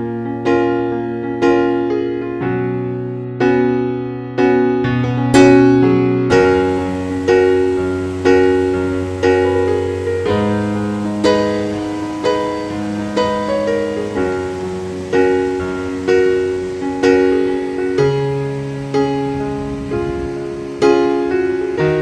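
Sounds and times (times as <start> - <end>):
slow gentle piano melody: 0.0 - 22.0.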